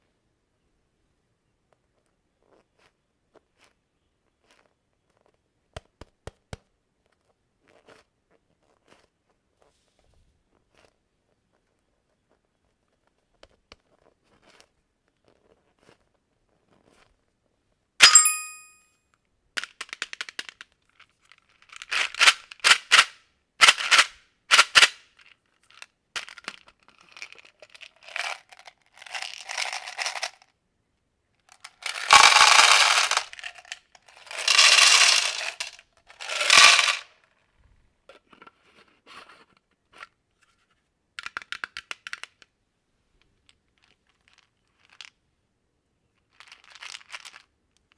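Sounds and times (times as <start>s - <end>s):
quick clicks and rattles: 19.6s - 25.0s, 25.7s - 30.4s, 31.5s - 37.1s.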